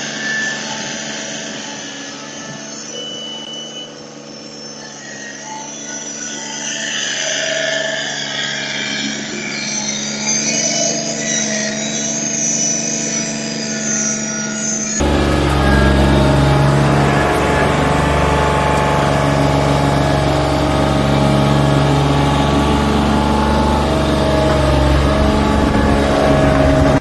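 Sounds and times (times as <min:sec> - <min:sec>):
engine humming: 0:15.0 - 0:27.0
louder engine: 0:15.0 - 0:27.0.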